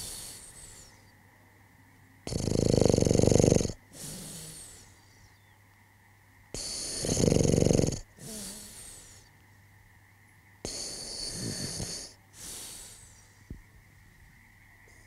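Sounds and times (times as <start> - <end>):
man snoring: 2.3 - 4.8, 6.6 - 9.1, 10.7 - 13.0.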